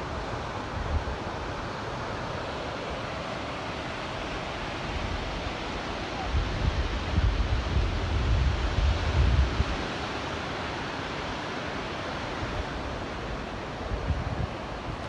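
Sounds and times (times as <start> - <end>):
sea surf hissing: 1.2 - 15.0
wind buffeting microphone: 6.2 - 9.8, 12.4 - 15.0.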